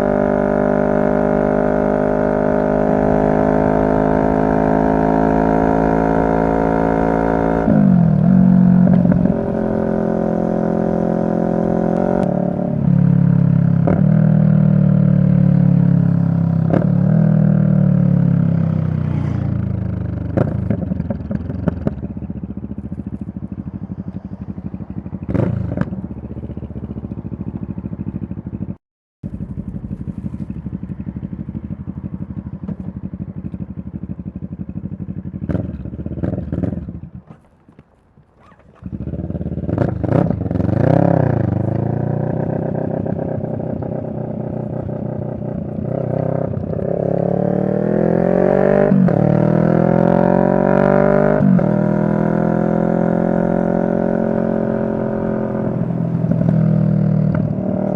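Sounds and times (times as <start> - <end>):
motorcycle engine revving: 0.0 - 37.8, 38.4 - 57.9
gear upshifts: 37.0 - 39.3.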